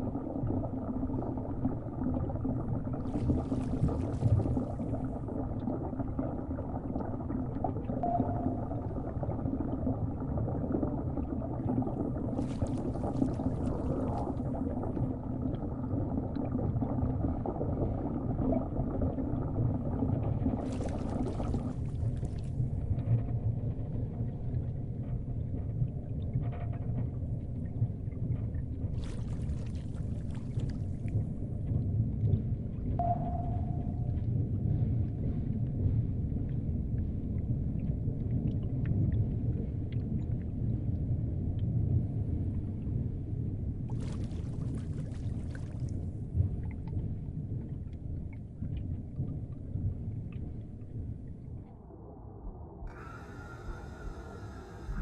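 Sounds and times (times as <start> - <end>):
underwater rumble of water: 0.0 - 55.0
hissing water swell: 52.9 - 55.0.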